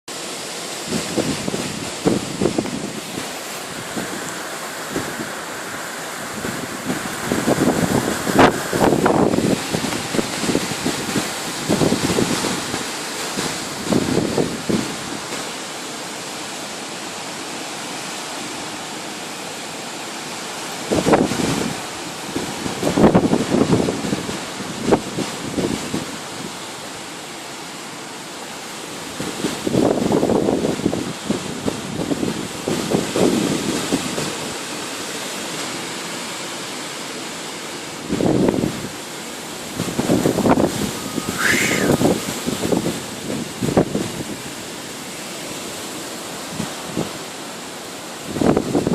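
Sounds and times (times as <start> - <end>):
wind gusts buffeting microphone: 0.8 - 15.4, 20.7 - 26.7, 29.1 - 34.6, 38.0 - 44.8, 48.2 - 48.9
storm wind rushing: 0.9 - 15.0, 39.7 - 44.3.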